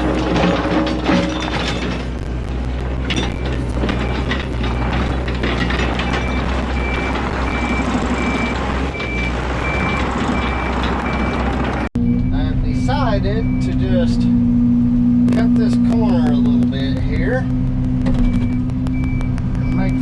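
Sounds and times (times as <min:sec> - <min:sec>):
machine knocking: 0:00.0 - 0:11.9
excavator diesel engine running: 0:00.0 - 0:20.0
backup alarm beeping: 0:02.2 - 0:13.8, 0:17.8 - 0:20.0.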